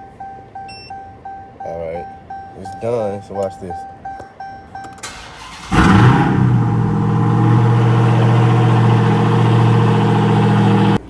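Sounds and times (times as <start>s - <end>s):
car engine starting and idling: 0.0s - 11.0s.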